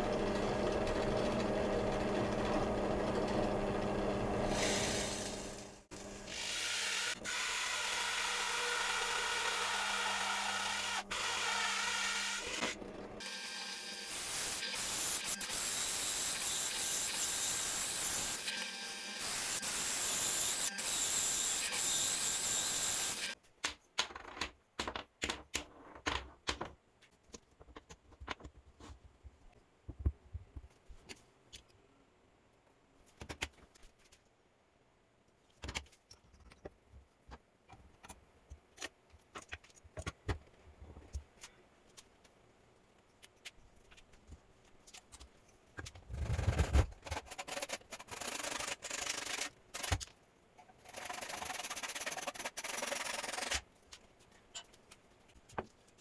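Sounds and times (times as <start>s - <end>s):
power tool running: 0.0s - 14.3s
clicks and knocks of parts handled: 35.5s - 42.4s.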